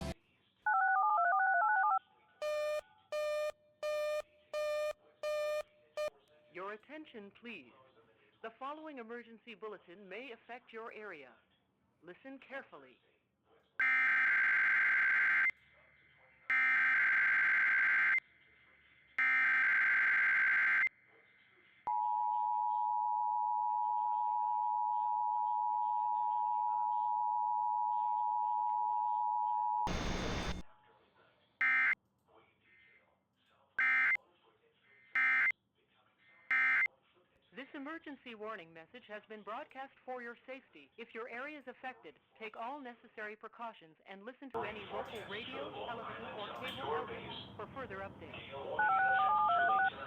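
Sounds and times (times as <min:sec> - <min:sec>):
touch-tone digits: 0:01.8 - 0:06.1
alert data burst: 0:29.9 - 0:30.6, 0:31.6 - 0:32.0
buzzy beeps: 0:29.9 - 0:30.6, 0:31.6 - 0:32.0, 0:35.2 - 0:35.5, 0:36.5 - 0:36.9
two-tone attention signal: 0:31.6 - 0:32.0.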